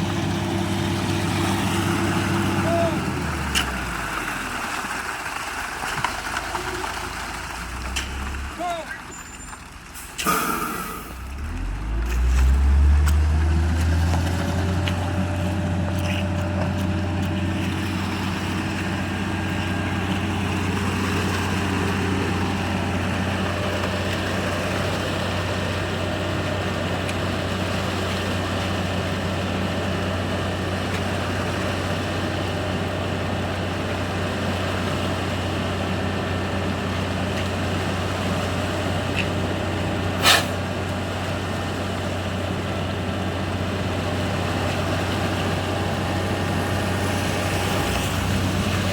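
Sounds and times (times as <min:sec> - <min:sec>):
diesel truck engine starting: 0:00.0 - 0:48.9
short burst of noise: 0:10.0 - 0:11.4.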